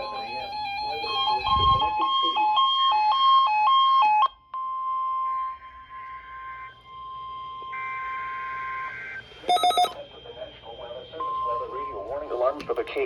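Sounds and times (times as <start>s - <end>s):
steady warning alarm tone: 0.0s - 13.0s
alternating electronic beeps: 9.5s - 11.9s.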